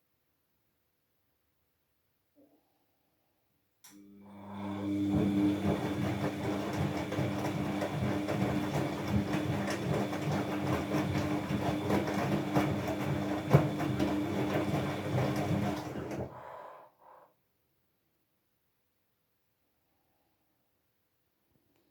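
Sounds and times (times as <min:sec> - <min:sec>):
washing machine drum running: 0:04.3 - 0:16.4.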